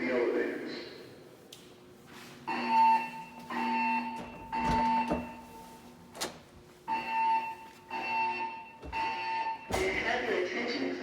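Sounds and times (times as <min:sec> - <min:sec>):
fire alarm beeps: 0:02.5 - 0:05.8, 0:06.8 - 0:10.5.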